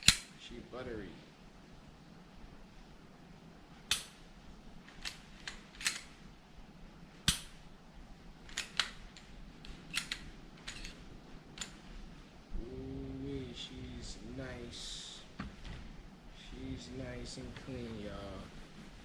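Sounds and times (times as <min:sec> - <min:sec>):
pistol slide metallic clicks: 0:00.0 - 0:00.4, 0:03.9 - 0:04.2, 0:04.9 - 0:06.1, 0:07.2 - 0:07.6, 0:09.7 - 0:11.0.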